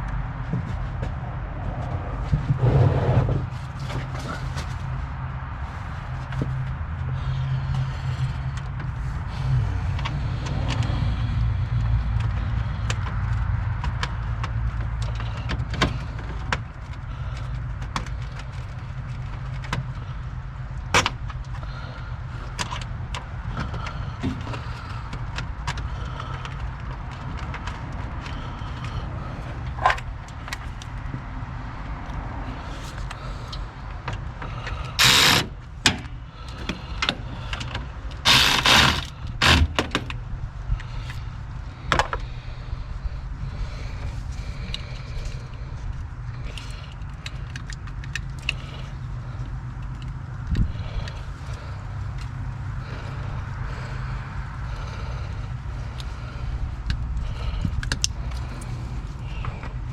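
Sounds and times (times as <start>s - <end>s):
steady low hum: 0.0s - 59.9s
clicks and knocks of fitting parts: 6.2s - 31.3s, 32.0s - 42.5s, 43.7s - 53.9s, 54.7s - 59.9s
ratchet wrench bursts: 34.9s - 35.6s, 38.2s - 39.7s.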